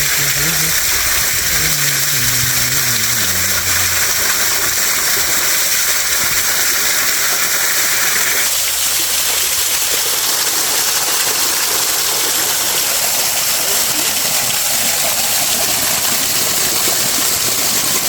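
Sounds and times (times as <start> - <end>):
waterfall rushing: 0.0 - 7.2.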